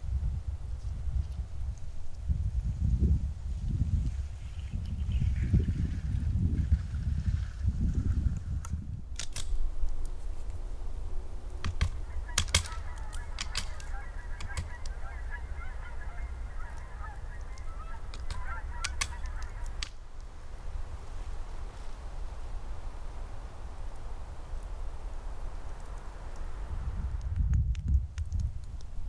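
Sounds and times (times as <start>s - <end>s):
wind rumble on microphone: 0.0s - 29.0s
sharp clicks: 8.6s - 10.6s, 11.4s - 20.3s
geese honking: 11.6s - 20.2s.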